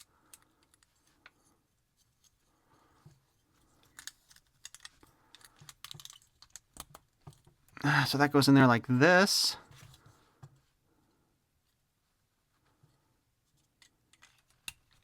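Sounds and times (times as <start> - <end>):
small plastic parts clicking: 0.0 - 1.4, 3.8 - 7.6, 13.8 - 15.0.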